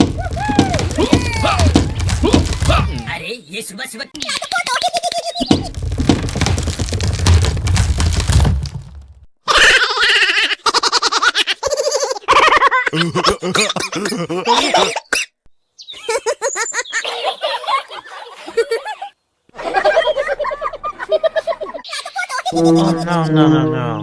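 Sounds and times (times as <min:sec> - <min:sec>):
people laughing and giggling: 0:09.5 - 0:14.9, 0:16.0 - 0:23.6.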